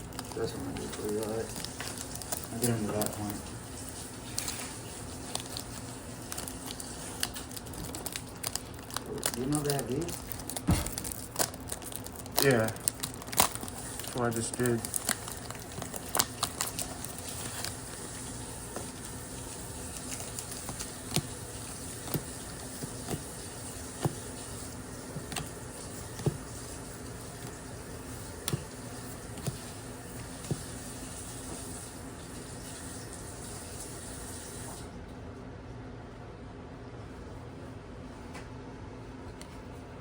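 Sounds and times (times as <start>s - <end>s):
light clicks handling packaging: 6.3s - 17.8s.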